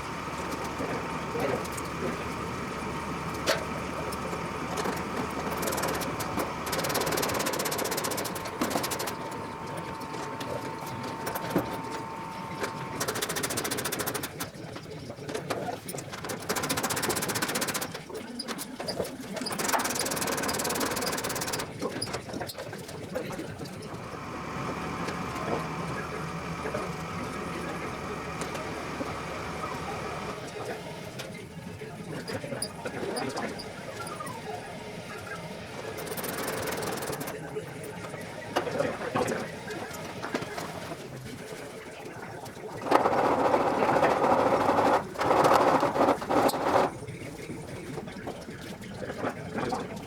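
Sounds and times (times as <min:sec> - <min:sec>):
small motor humming: 0:00.0 - 0:14.4, 0:19.4 - 0:21.7, 0:23.8 - 0:31.4, 0:32.4 - 0:40.8, 0:42.7 - 0:47.0
small power tool running: 0:00.0 - 0:14.4, 0:19.6 - 0:21.7, 0:23.9 - 0:31.2, 0:42.8 - 0:47.0.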